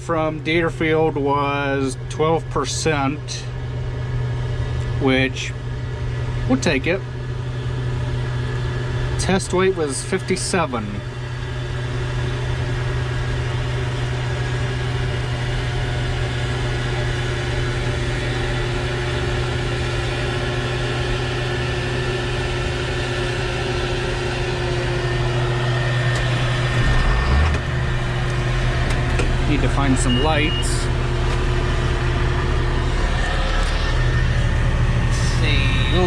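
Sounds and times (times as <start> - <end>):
combine harvester droning: 0.0 - 36.0
low rumble: 24.5 - 36.0.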